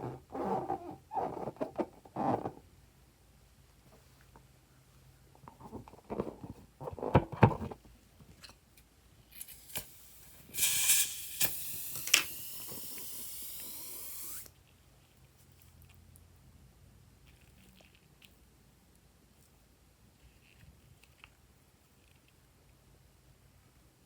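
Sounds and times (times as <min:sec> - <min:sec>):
aerosol can spraying: 0:09.4 - 0:14.5.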